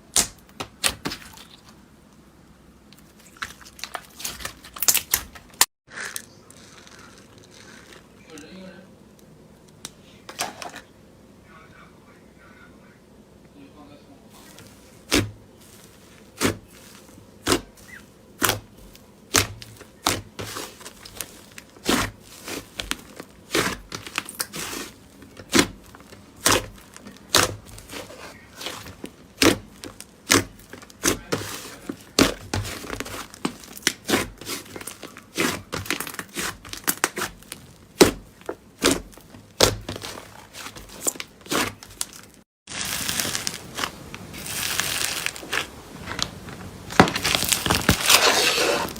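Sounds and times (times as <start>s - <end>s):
dense steady crackle: 41.8s - 48.2s.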